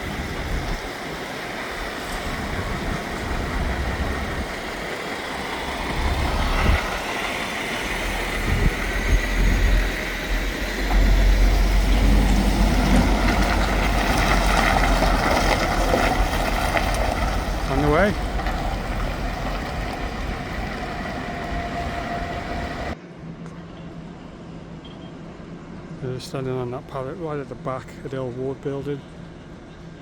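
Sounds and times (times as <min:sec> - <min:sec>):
lorry diesel engine: 0:00.0 - 0:23.0.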